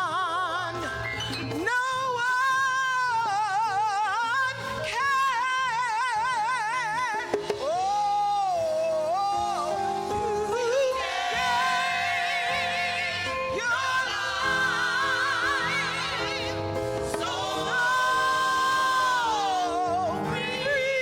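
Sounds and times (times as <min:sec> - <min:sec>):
slow gospel music: 0:00.0 - 0:21.0.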